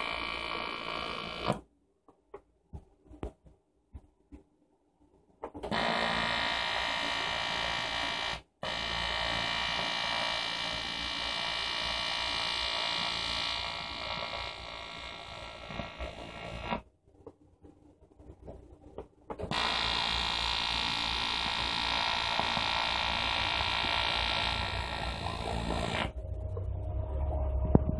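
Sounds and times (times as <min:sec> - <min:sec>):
welding arc buzzing: 0:00.0 - 0:01.6, 0:05.7 - 0:16.8, 0:19.5 - 0:26.2.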